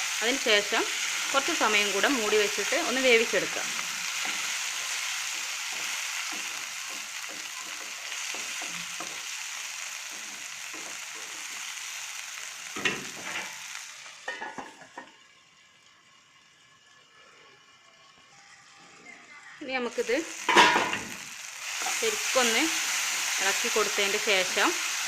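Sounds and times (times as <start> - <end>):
vegetables sizzling in oil: 0.0 - 25.0
spatula scraping a pan: 3.4 - 11.6.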